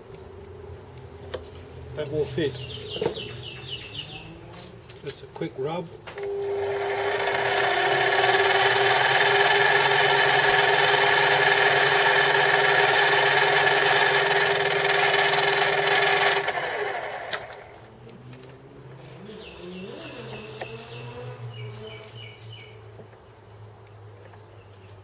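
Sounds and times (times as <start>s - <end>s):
lathe motor hum: 6.2s - 17.8s
lathe spinning down: 6.3s - 17.7s.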